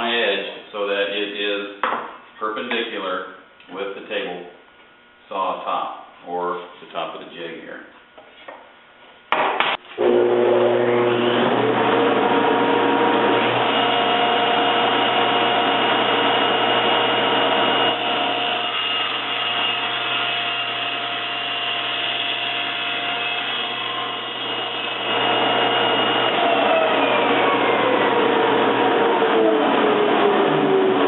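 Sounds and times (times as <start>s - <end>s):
table saw motor running: 10.0s - 31.0s.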